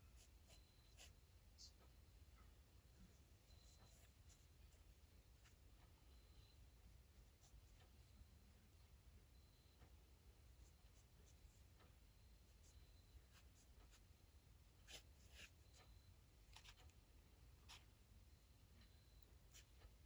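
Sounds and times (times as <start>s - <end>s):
pen scratching on paper: 0.0s - 1.2s, 3.6s - 5.7s, 12.5s - 14.1s, 14.7s - 15.8s.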